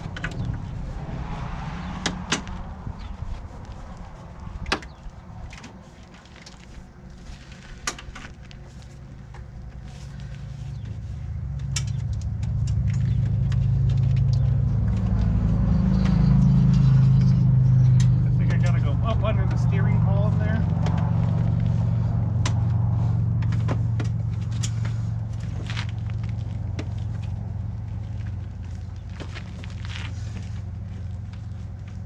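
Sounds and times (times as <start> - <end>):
brake cable and metal parts clicking: 0.0 - 0.9, 2.0 - 32.0
low motor hum: 0.0 - 32.0.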